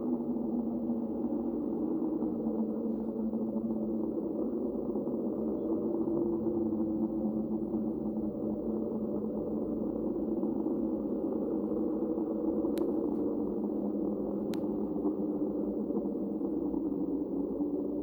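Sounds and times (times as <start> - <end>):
faint clicks: 12.7 - 13.3, 14.5 - 14.8.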